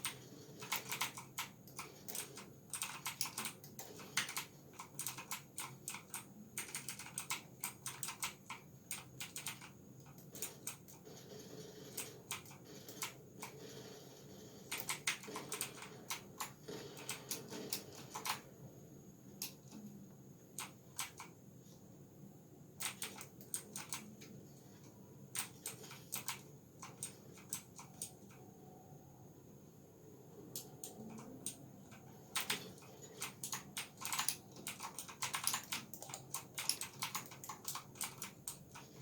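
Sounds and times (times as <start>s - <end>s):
mechanical keyboard keys clacking: 0.0s - 11.0s, 11.8s - 13.6s, 14.7s - 18.5s, 20.6s - 21.3s, 22.8s - 24.3s, 25.2s - 28.5s, 30.5s - 39.0s.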